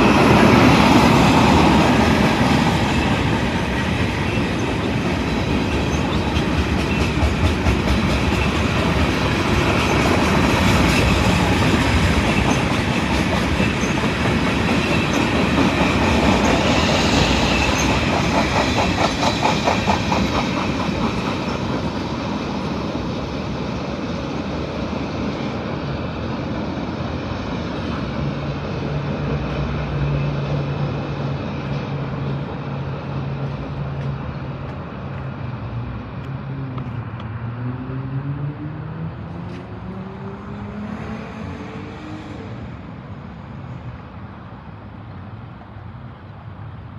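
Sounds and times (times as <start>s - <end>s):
train wheels clacking over rail joints: 0.3s - 22.7s.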